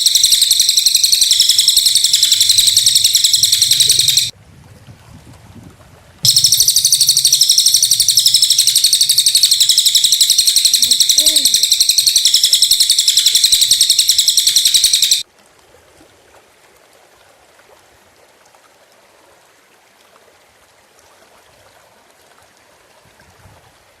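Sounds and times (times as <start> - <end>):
small bird sharp call: 0.0 - 4.3, 6.3 - 15.2.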